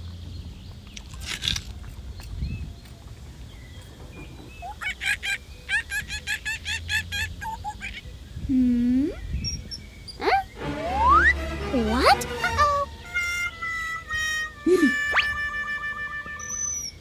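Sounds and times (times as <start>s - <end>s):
fowl honking calls: 10.2s - 17.0s.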